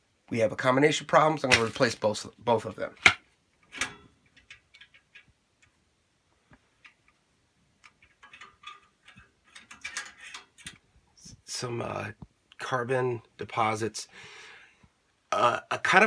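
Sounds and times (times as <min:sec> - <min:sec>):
hands clicking and tapping parts: 0:03.0 - 0:10.9.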